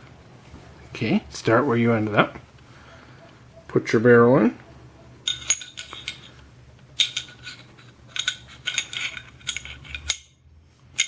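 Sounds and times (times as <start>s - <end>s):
metallic clicks and scrapes: 5.2s - 10.3s.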